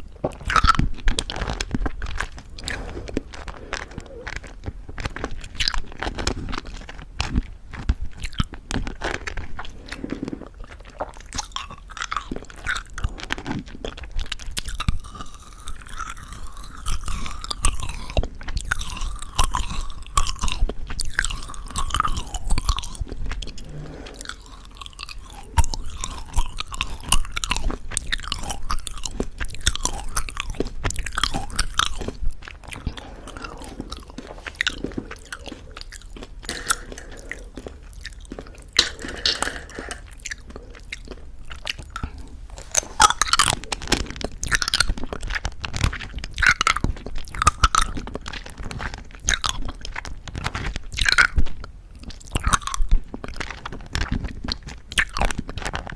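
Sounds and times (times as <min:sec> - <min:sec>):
sucking mouth noises: 0:00.0 - 0:07.4, 0:08.1 - 0:45.2
crunching candy: 0:00.0 - 0:55.9
sticky wet mouth clicks: 0:14.4 - 0:48.0.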